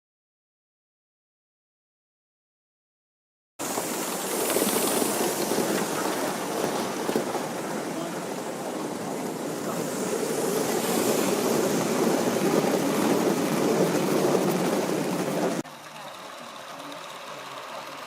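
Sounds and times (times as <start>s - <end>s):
model train rumbling on track: 3.6s - 18.0s.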